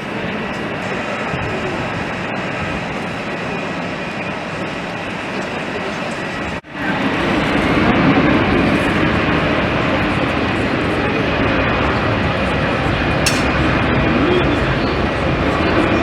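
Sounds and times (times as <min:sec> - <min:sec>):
jet engines roaring: 0:00.0 - 0:16.0.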